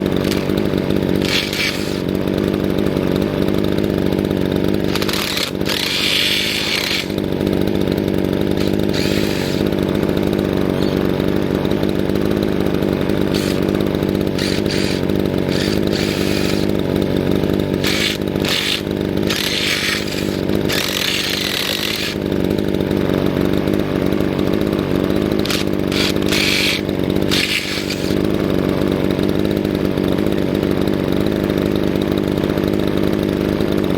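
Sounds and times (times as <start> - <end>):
chainsaw engine idling: 0.0 - 33.9
short bursts of hiss: 8.6 - 9.6.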